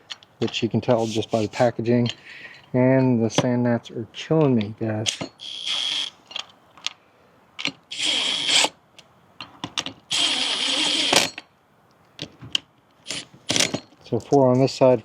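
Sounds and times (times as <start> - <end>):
power drill whine: 5.4 - 6.1, 7.9 - 8.7, 10.1 - 11.4.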